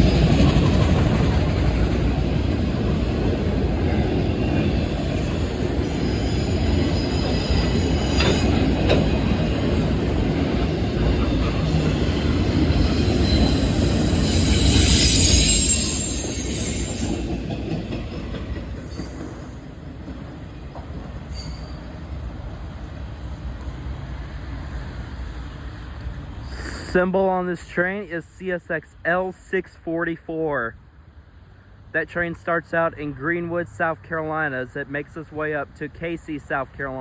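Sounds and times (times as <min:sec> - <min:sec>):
freight train wheels clattering: 0:00.0 - 0:21.8
high-pitched wheel squealing: 0:03.9 - 0:09.6, 0:10.7 - 0:17.7, 0:21.2 - 0:21.9.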